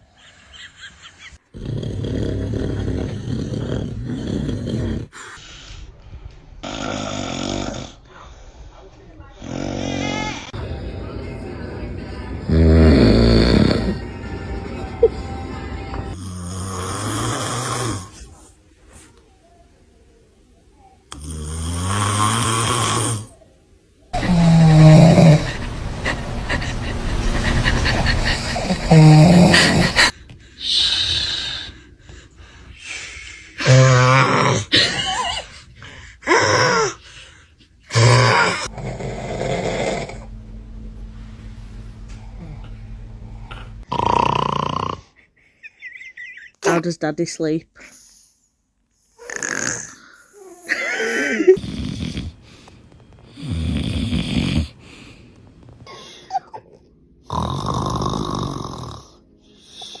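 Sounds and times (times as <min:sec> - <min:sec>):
man snoring loudly: 0:01.5 - 0:05.2, 0:06.6 - 0:08.0, 0:12.4 - 0:14.0, 0:16.1 - 0:18.3, 0:21.1 - 0:23.4, 0:24.2 - 0:27.6, 0:28.5 - 0:31.7, 0:33.6 - 0:34.8, 0:37.9 - 0:40.3, 0:49.1 - 0:52.4, 0:53.3 - 0:54.9, 0:57.3 - 0:59.2
higher-pitched wavering sound: 0:24.2 - 0:30.1, 0:38.6 - 0:44.8.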